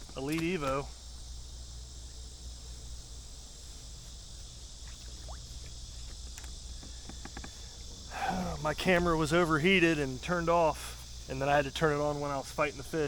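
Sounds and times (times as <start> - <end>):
insects droning: 0.0 - 13.0
low steady hum: 0.0 - 13.0
faint ticks: 3.6 - 8.3.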